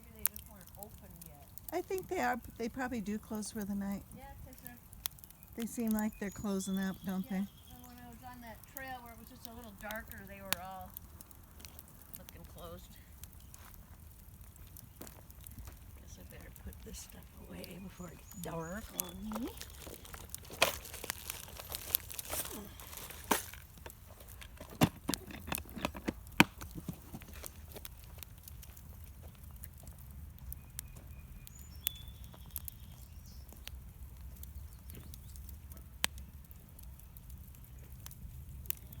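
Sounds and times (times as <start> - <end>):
campfire crackling and popping: 0.0 - 39.0.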